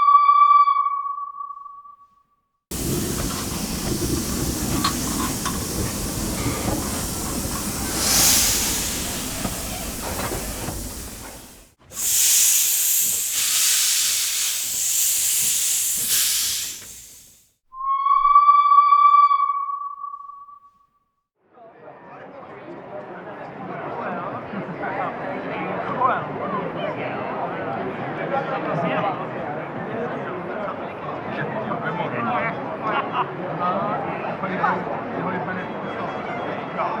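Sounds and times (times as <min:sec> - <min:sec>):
high steam hiss: 0:02.7 - 0:17.4
steam locomotive rumbling hiss: 0:02.7 - 0:17.4
steam whistle blowing: 0:11.0 - 0:20.6.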